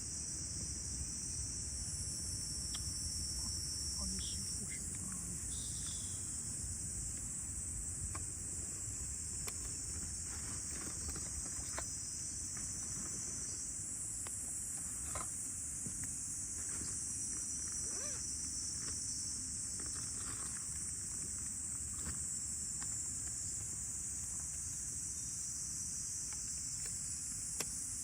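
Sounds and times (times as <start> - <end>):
insects chirping: 0.0 - 28.0
low background rumble: 2.7 - 11.4.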